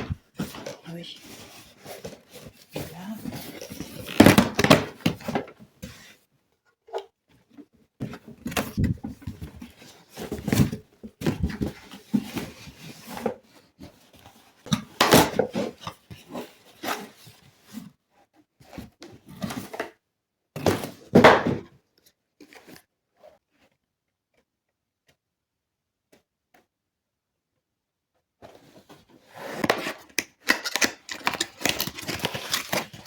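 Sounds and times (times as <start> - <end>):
packaging rustling: 30.4 - 33.0.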